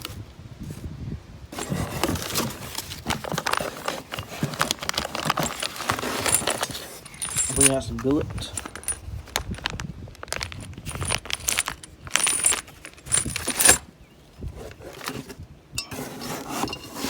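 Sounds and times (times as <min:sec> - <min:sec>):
metal parts clinking: 0:01.6 - 0:14.0, 0:15.8 - 0:17.0.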